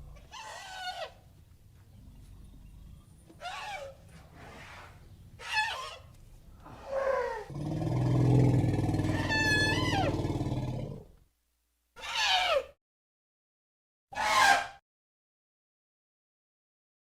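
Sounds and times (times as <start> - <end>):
elephant trumpeting squeal: 0.3 - 1.2, 3.4 - 4.0, 5.4 - 6.0, 9.1 - 10.2, 12.0 - 12.7, 14.2 - 14.8
elephant growling rumble: 6.7 - 11.1
elephant calls: 9.0 - 10.3, 12.0 - 12.7.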